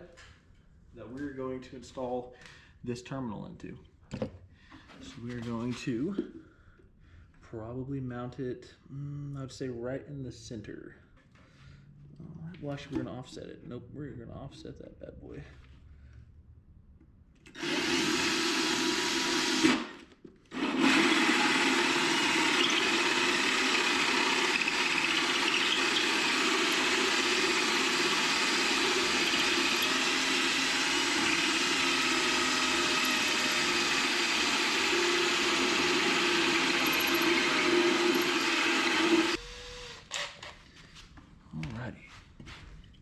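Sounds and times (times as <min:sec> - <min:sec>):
power drill cutting wood: 0:17.5 - 0:40.5.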